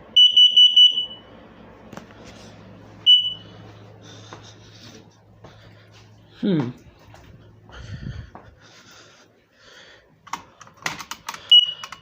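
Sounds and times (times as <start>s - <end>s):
alarm loud high beeps: 0.2s - 1.2s, 3.1s - 3.4s, 11.5s - 12.0s.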